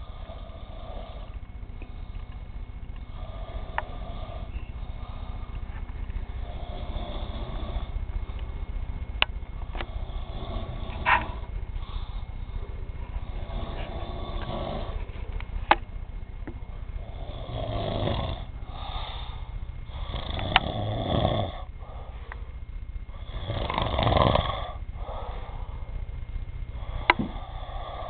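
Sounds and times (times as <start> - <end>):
person snoring: 0.0 - 2.2, 3.0 - 5.7, 6.3 - 8.5, 9.8 - 15.1, 17.0 - 22.4, 23.1 - 26.0, 26.7 - 28.0
quiet breathing: 0.0 - 28.0.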